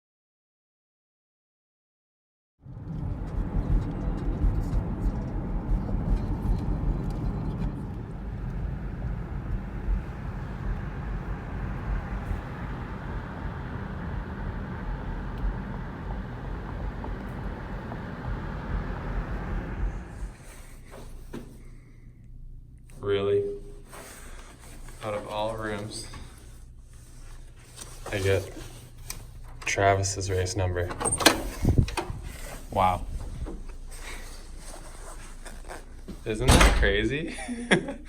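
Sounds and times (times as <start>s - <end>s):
vehicle engine and road noise: 2.6s - 20.8s.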